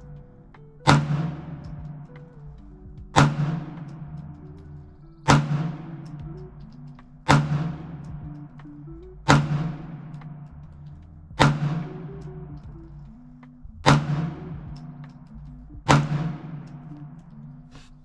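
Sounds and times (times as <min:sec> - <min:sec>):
pistol shots echoing: 0:03.2 - 0:04.4, 0:05.3 - 0:06.2, 0:09.3 - 0:10.4, 0:11.4 - 0:12.3.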